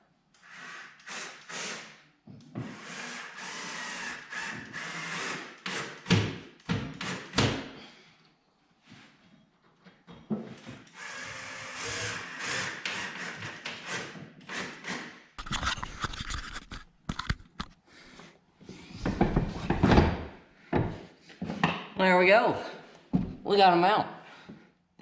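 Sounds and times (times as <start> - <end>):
rubbing and scraping strokes: 15.4 - 17.8.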